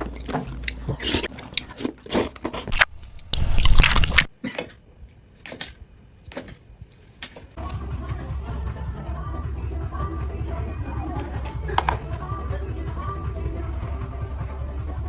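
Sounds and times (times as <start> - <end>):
wet chewing and smacking: 0.0 - 4.3.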